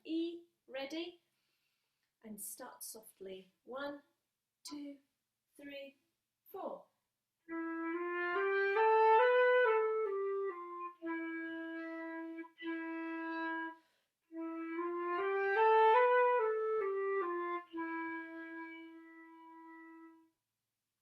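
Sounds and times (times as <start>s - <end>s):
flute playing simple melody: 7.4s - 20.3s.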